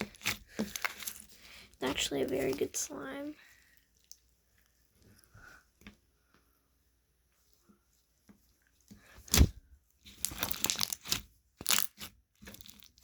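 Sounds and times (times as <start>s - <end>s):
slime rustling and crackling: 0.0s - 5.0s, 8.5s - 13.0s.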